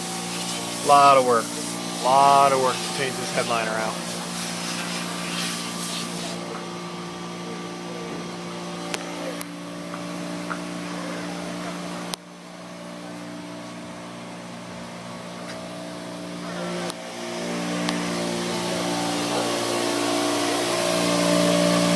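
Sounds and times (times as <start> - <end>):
hiss: 0.0 - 6.5
machine hum: 0.0 - 12.9, 14.4 - 21.9.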